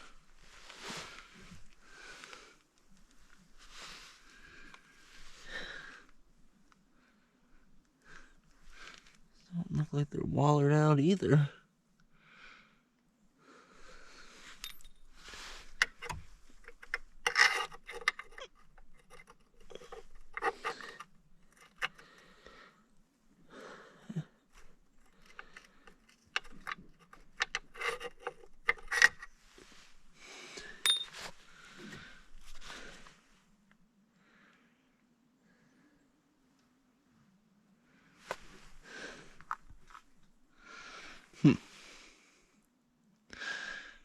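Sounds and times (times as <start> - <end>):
metal parts clinking and scraping: 14.6 - 22.0, 25.0 - 29.4, 30.8 - 31.4.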